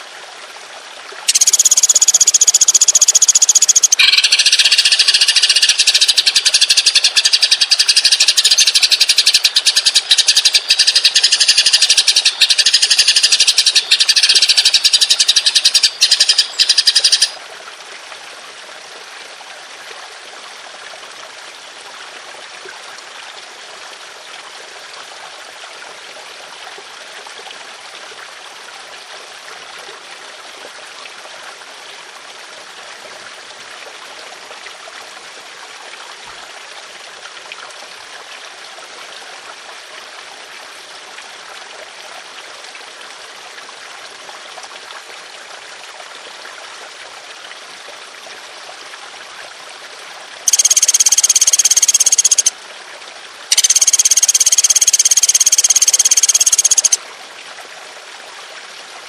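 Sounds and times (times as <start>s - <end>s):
songbird trilling: 1.3s - 17.4s, 50.5s - 52.5s, 53.5s - 57.0s.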